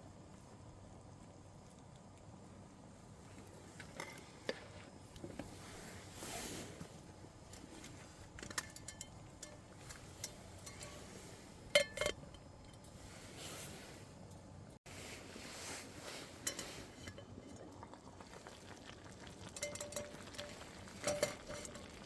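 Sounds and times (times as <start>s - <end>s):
metal cookware clinking: 8.5s - 12.8s, 16.3s - 17.6s, 19.6s - 22.0s.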